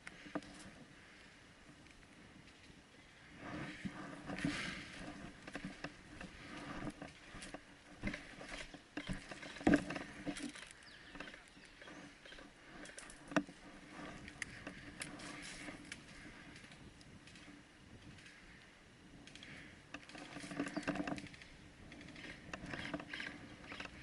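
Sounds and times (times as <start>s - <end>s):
footsteps through dry brush: 2.0s - 18.6s.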